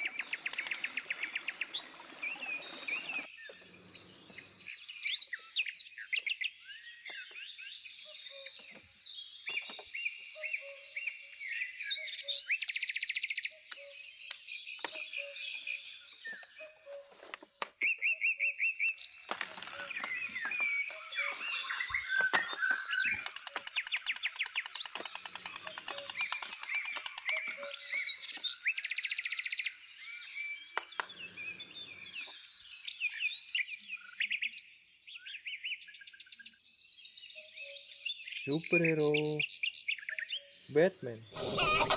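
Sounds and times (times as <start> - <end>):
birds chirping and singing: 0.0 - 41.9
fast buzzy bird trill: 19.0 - 29.8, 40.7 - 41.9.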